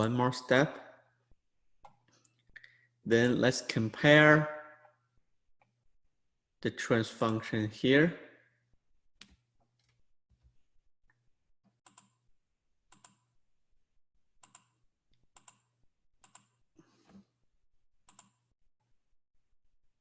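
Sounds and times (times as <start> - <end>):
computer mouse clicking: 11.8 - 12.2, 12.9 - 13.3, 14.4 - 16.6, 18.1 - 18.5.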